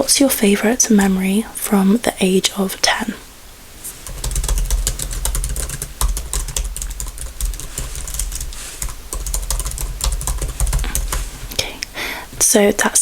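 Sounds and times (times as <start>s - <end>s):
fast typing on keyboard: 4.0s - 11.4s.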